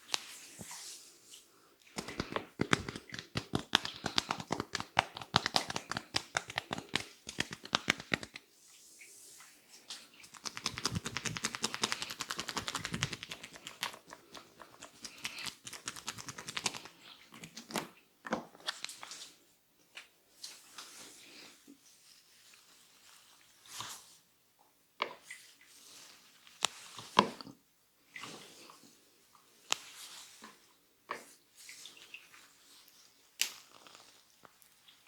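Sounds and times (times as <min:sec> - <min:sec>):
hands rubbing hair: 0:01.9 - 0:08.5, 0:10.2 - 0:17.5
hands tapping on head: 0:02.0 - 0:08.4, 0:10.3 - 0:14.0, 0:15.0 - 0:16.8.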